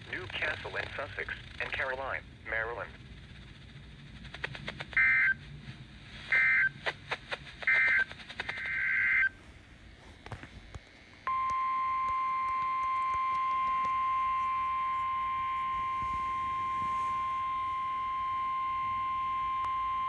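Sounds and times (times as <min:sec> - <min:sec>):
high steady warning alarm tone: 0:11.3 - 0:20.0.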